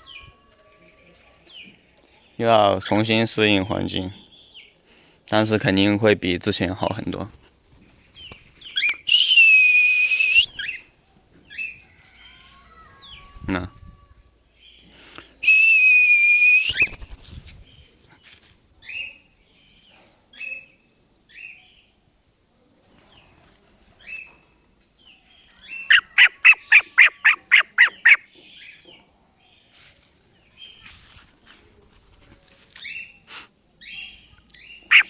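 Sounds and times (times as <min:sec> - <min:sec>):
cockatiel calling: 0:25.7 - 0:28.7, 0:33.9 - 0:35.0.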